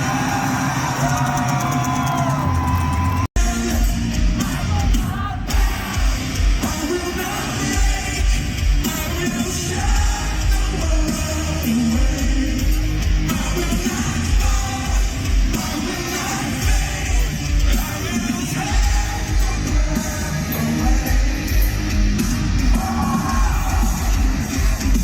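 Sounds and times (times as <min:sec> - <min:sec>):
live heavy metal band: 0:00.0 - 0:25.0.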